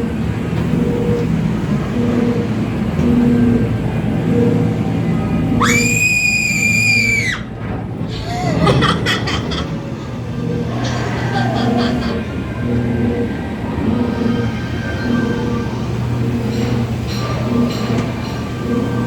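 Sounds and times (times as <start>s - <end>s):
pulsing low hum: 0.0s - 6.1s, 7.4s - 19.0s
ride vehicle rumbling: 0.0s - 19.0s
piercing scream-like cry: 5.6s - 7.5s.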